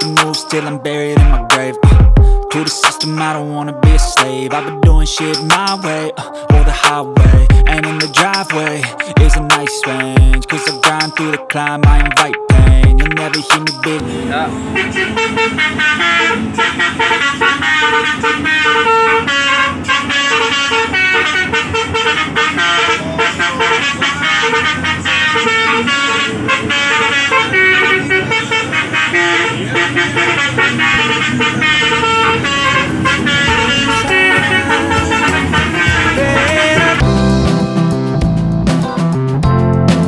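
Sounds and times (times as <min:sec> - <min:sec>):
musical air horn playing tune: 0:04.0 - 0:11.5, 0:13.0 - 0:40.0.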